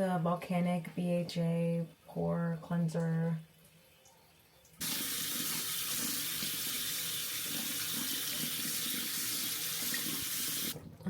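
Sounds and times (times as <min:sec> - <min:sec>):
water running into basin: 0:04.6 - 0:11.0
faucet turned on: 0:04.8 - 0:10.8.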